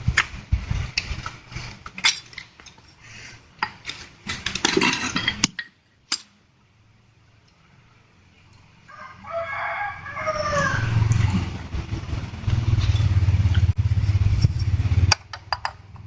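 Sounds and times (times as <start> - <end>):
metal parts clinking: 1.9 - 3.0, 3.6 - 6.3.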